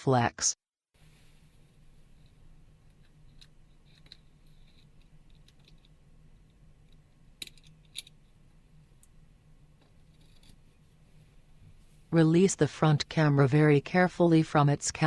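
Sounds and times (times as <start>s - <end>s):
steady low hum: 1.0s - 14.8s
small parts and tools clicking: 2.2s - 8.3s.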